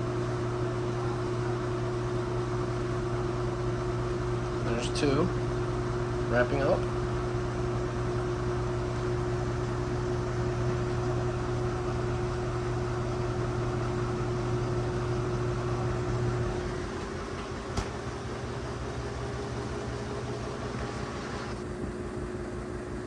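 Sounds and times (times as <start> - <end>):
motor hum: 2.7 - 23.0
washing machine drum spinning: 12.3 - 21.6.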